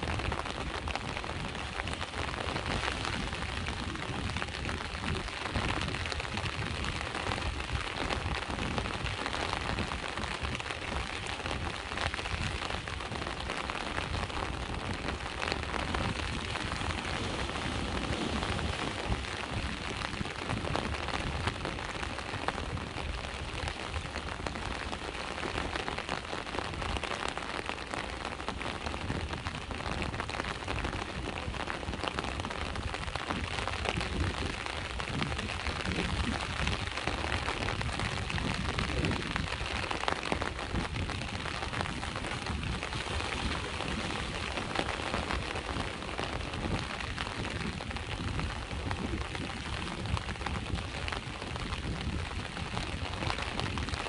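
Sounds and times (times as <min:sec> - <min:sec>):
steady rain falling: 0:00.0 - 0:54.0
sea waves washing: 0:09.0 - 0:29.8, 0:39.3 - 0:48.8.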